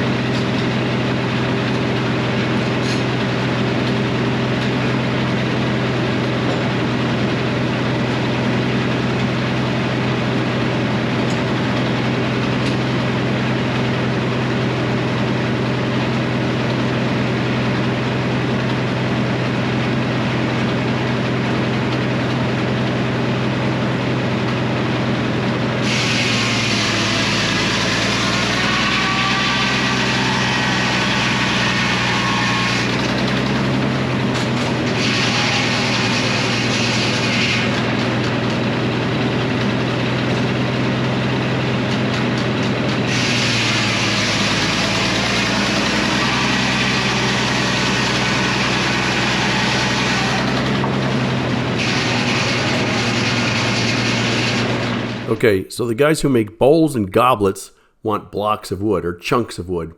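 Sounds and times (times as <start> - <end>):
sawmill engine hum: 0.0 - 24.5, 25.1 - 59.9
saw blade cutting log: 1.7 - 3.3, 25.8 - 33.6, 34.4 - 38.0, 43.1 - 54.9.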